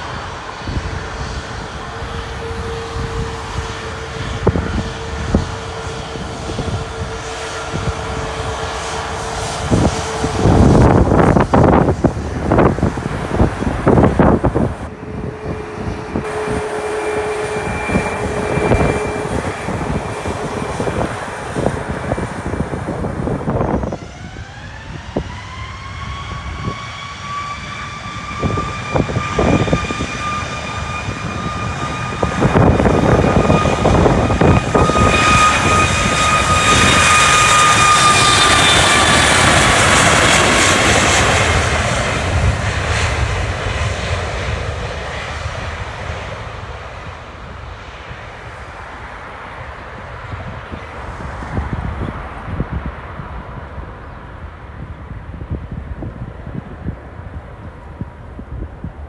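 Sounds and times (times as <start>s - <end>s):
jet engine whine: 0.0s - 59.0s.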